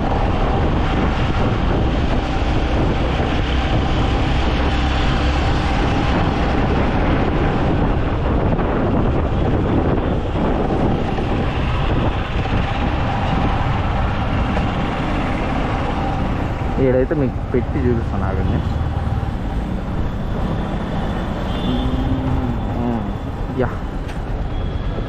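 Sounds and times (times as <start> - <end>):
motorcycle engine and road noise: 0.0 - 25.0
wind rushing over microphone: 0.0 - 25.0.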